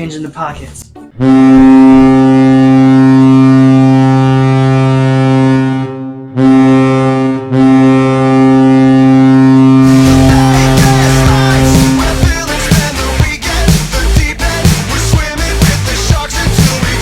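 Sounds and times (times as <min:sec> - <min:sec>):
goal horn blasts: 0:01.2 - 0:12.1.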